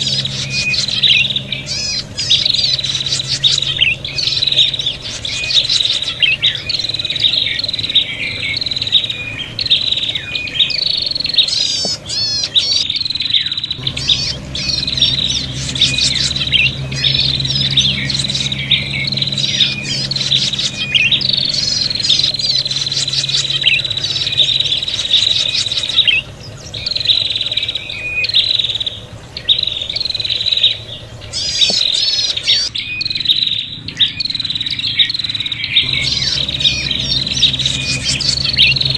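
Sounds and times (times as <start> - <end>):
birds chattering calls: 0.0 - 38.9.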